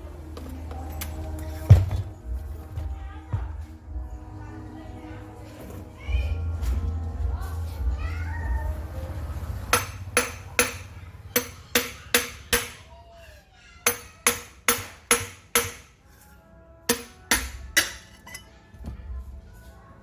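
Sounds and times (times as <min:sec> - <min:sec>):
background music: 0:00.0 - 0:12.8, 0:13.9 - 0:20.0
hammer striking metal: 0:09.7 - 0:12.9, 0:13.9 - 0:16.0, 0:16.9 - 0:18.5.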